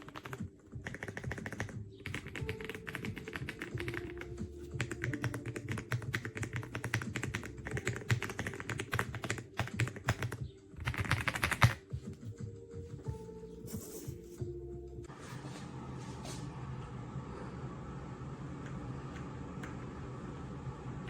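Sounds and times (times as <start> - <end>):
mechanical keyboard typing: 0.0 - 11.8.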